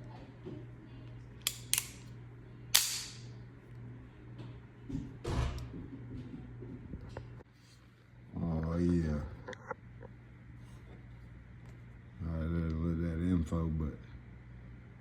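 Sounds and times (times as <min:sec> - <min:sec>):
revolver hammer snap: 0:01.4 - 0:02.0, 0:02.7 - 0:03.3
revolver metallic clicks: 0:01.4 - 0:02.1, 0:02.7 - 0:03.3.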